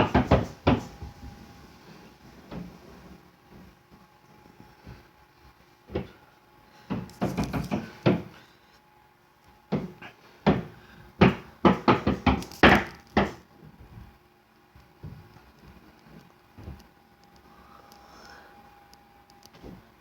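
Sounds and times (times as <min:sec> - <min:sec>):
banging knocks: 0:00.0 - 0:01.2, 0:09.7 - 0:13.4.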